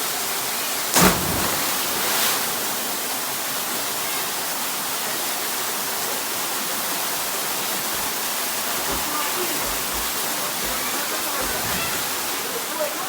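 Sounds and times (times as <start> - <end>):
waterfall rushing: 6.7 - 13.0.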